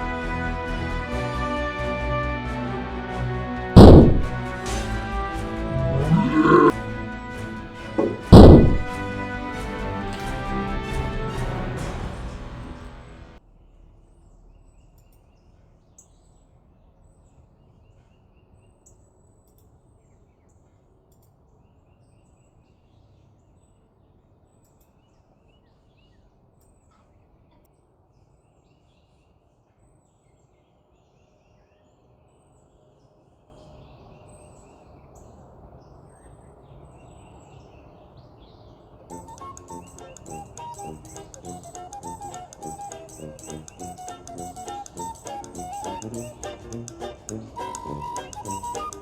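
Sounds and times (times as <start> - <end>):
outdoor background hiss: 33.5 - 49.0
small birds chirping: 33.6 - 49.0.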